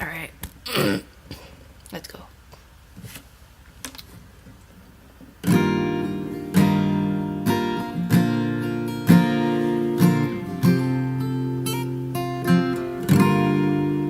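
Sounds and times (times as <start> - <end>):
acoustic guitar strumming chords: 5.4 - 14.0.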